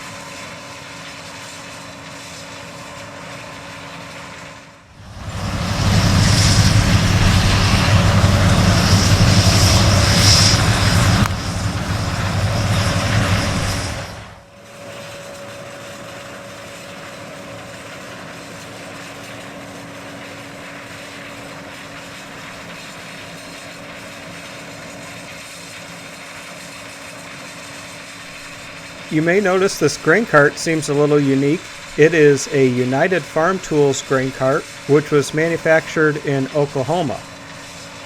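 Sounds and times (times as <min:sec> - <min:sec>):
fixed hum: 0:04.9 - 0:14.4, 0:28.3 - 0:38.0
diesel farm machinery running: 0:04.9 - 0:14.5, 0:28.2 - 0:38.0.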